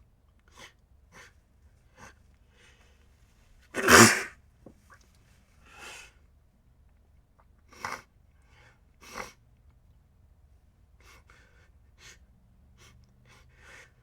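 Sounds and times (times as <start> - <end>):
person sneezing: 3.8 - 4.3.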